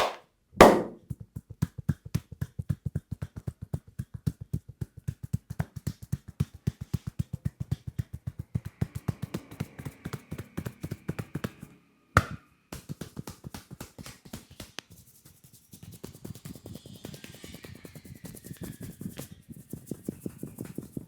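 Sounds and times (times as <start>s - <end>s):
loud sharp snap: 0.0s - 1.0s
hands tapping on a head: 0.0s - 16.6s.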